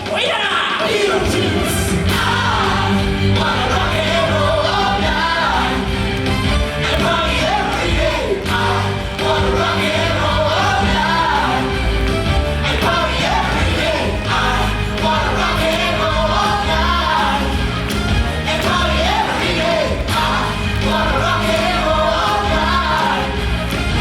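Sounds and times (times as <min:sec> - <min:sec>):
amplified rock and roll song: 0:00.0 - 0:24.0
performers singing together: 0:00.0 - 0:24.0
steady bass notes: 0:01.9 - 0:24.0.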